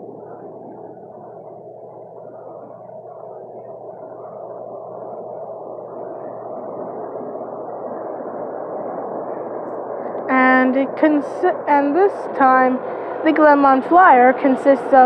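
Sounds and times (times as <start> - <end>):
train wheels and motors: 10.1 - 15.0.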